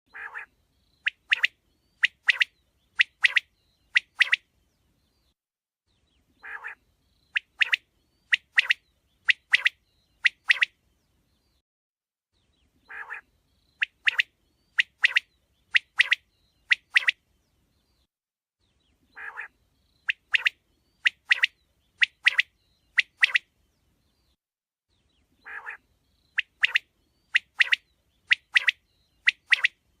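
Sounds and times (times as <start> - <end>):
quail calling: 0.1 - 0.5, 6.4 - 6.8, 12.9 - 15.2, 19.2 - 19.5, 25.4 - 25.8.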